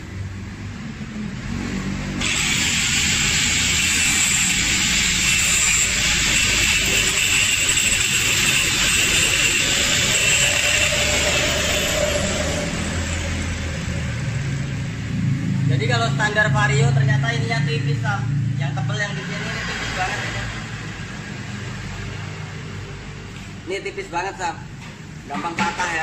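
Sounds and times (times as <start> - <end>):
power grinder on metal: 2.2 - 13.8.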